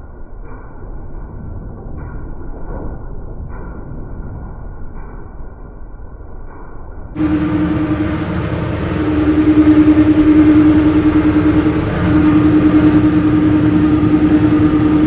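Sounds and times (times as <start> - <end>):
farm machinery engine humming: 7.2 - 15.0.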